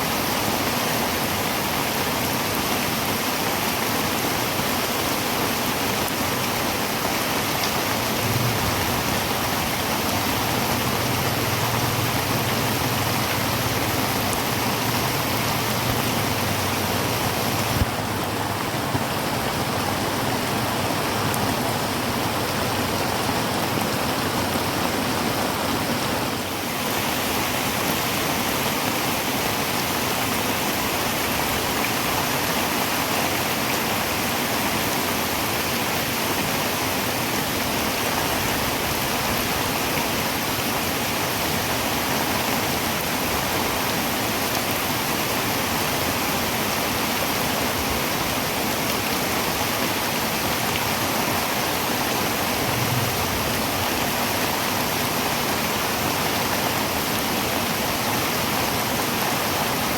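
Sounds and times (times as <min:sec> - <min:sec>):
heavy rain on a tin roof: 0:00.0 - 0:59.9.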